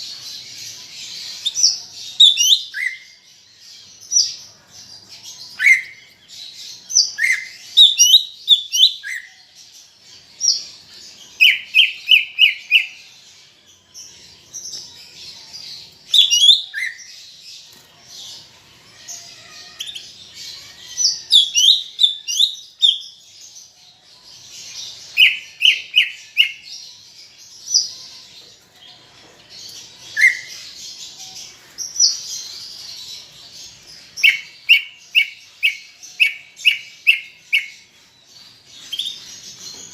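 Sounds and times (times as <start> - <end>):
bird singing whistled notes: 1.4 - 3.2, 5.5 - 9.5, 11.4 - 13.0, 16.1 - 17.2, 21.0 - 23.2, 25.0 - 26.8, 30.1 - 30.8, 34.0 - 38.0.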